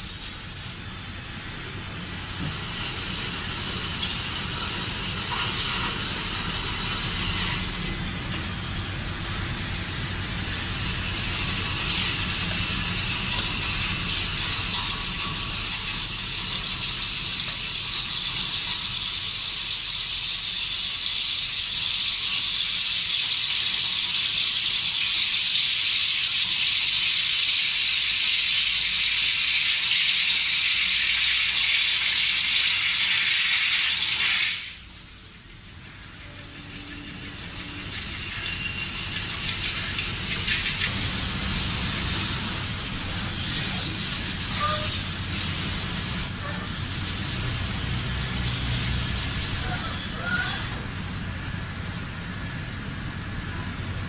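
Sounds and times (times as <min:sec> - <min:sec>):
industrial machine hissing: 0:00.0 - 0:25.4, 0:35.8 - 0:53.3.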